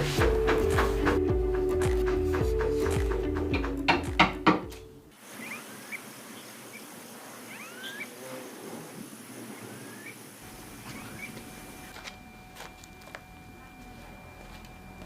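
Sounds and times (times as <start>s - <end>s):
background music: 0.0s - 5.1s
sharp knocks: 0.1s - 4.8s
short chirping calls: 5.3s - 8.3s, 9.6s - 14.2s
faint high-pitched hum: 9.8s - 15.0s.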